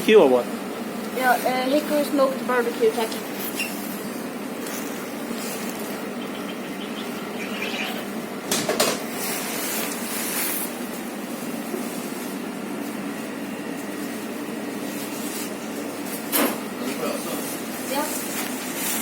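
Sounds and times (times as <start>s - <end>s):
background hum: 0.0s - 12.2s.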